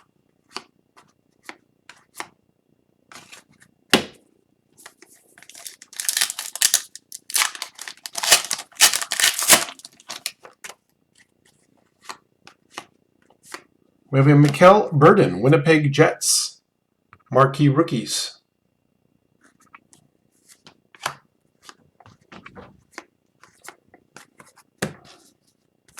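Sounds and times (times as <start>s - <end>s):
trading cards being handled: 5.4s - 10.3s
foil wrapper crinkling and tearing: 5.4s - 10.5s.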